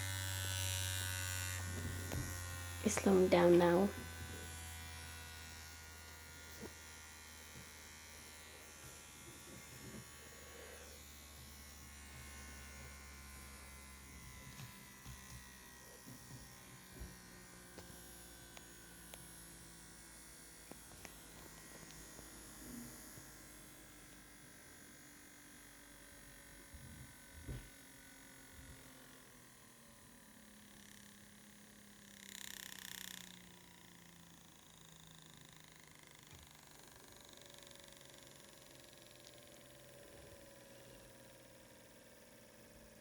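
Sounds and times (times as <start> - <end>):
low motor hum: 0.0 - 25.0.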